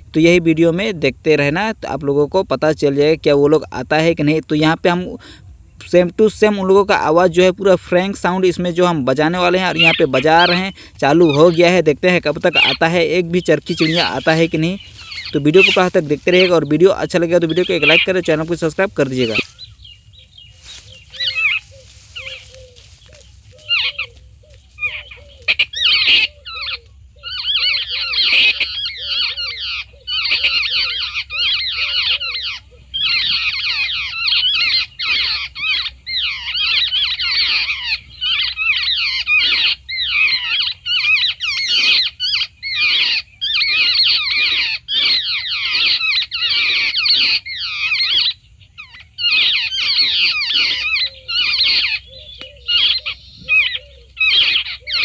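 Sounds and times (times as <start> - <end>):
harsh fast chattering: 11.4 - 19.6.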